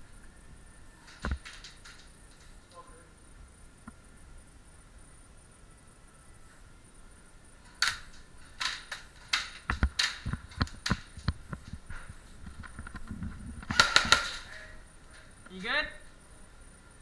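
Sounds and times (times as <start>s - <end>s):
knocks and thuds: 7.8s - 14.6s
airsoft gun shots: 13.7s - 14.7s.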